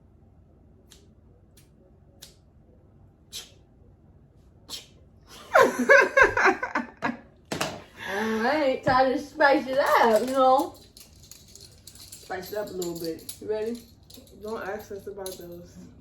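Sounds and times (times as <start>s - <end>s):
person making breathy hisses: 3.3s - 3.6s, 4.7s - 5.0s.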